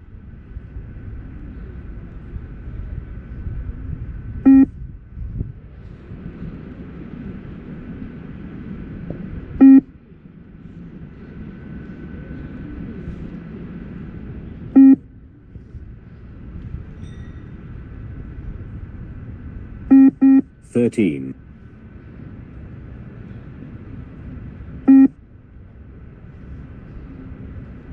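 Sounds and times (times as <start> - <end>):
steady low rumble: 0.0 - 27.9
short electronic beeps: 4.5 - 4.7, 9.6 - 9.8, 14.8 - 15.0, 19.9 - 20.4, 24.9 - 25.2.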